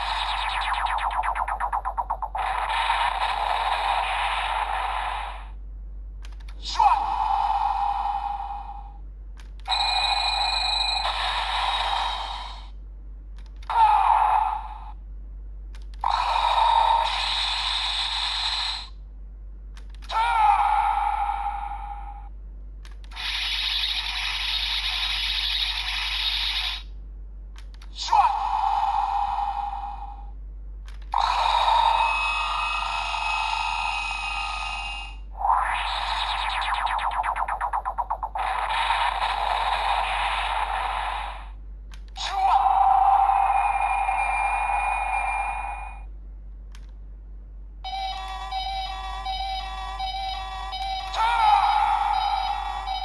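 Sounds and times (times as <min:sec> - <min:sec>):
toy electronic sound effects: 0:00.0 - 0:05.6, 0:06.6 - 0:07.8, 0:09.7 - 0:12.7, 0:16.0 - 0:18.9, 0:23.1 - 0:26.9, 0:31.1 - 0:41.6, 0:42.2 - 0:46.0, 0:47.9 - 0:53.0
electronic toy tones: 0:09.7 - 0:12.6, 0:23.1 - 0:26.9, 0:47.9 - 0:53.0.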